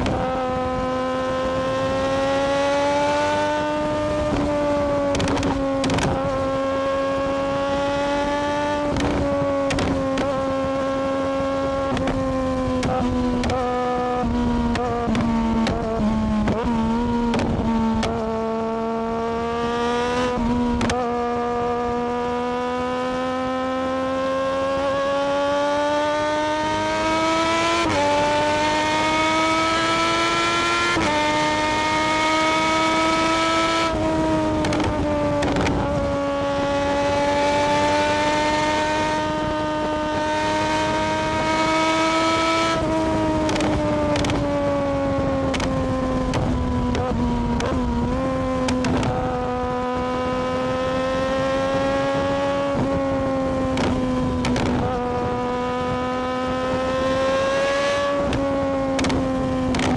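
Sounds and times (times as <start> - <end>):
motorcycle engine revving: 0.0 - 59.9
wind noise: 0.0 - 59.9.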